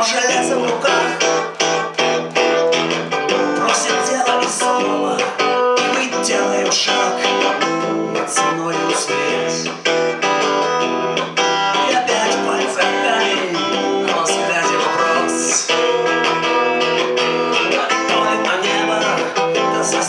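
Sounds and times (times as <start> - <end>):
acoustic guitar strumming: 0.0 - 20.0.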